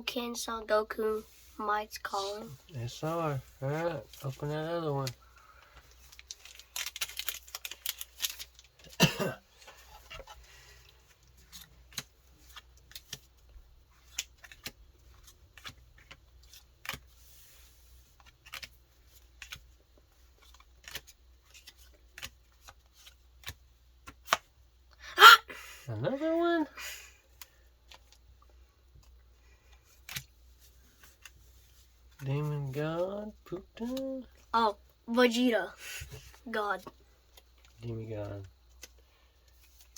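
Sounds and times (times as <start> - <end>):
cards clicking and rustling: 3.7 - 9.0, 9.6 - 24.6, 27.3 - 34.4, 36.2 - 39.9
foil wrapper tearing and crinkling: 6.0 - 9.0.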